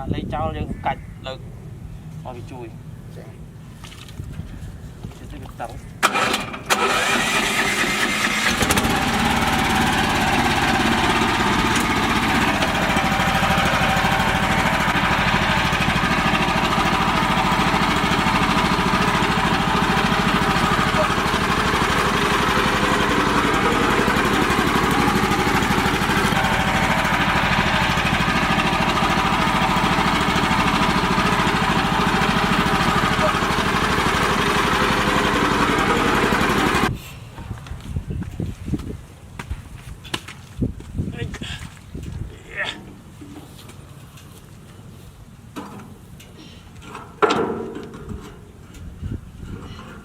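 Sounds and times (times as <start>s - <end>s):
tractor engine running: 6.0s - 37.7s.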